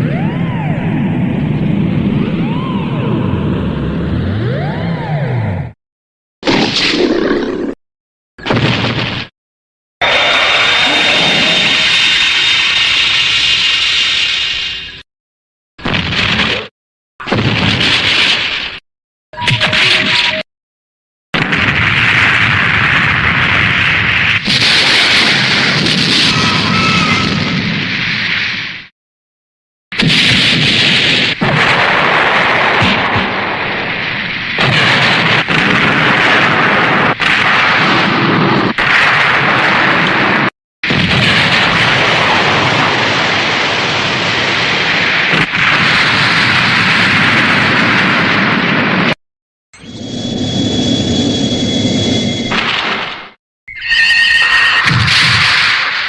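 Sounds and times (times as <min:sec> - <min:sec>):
explosion blast: 0:08.4 - 0:09.3, 0:15.8 - 0:18.8, 0:21.4 - 0:28.9, 0:30.0 - 0:49.2, 0:54.8 - 0:56.0.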